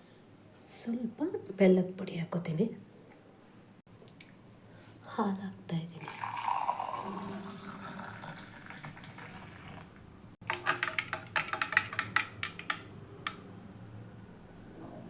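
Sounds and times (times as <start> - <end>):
milk pouring into a vessel: 6.0 - 9.9.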